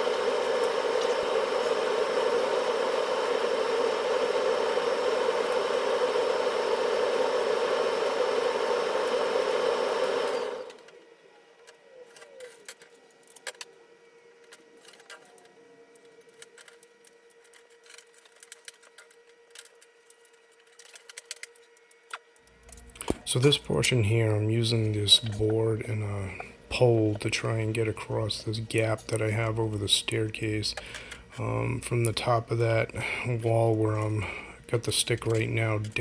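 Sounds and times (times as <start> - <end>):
air conditioning unit humming: 0.0 - 36.0.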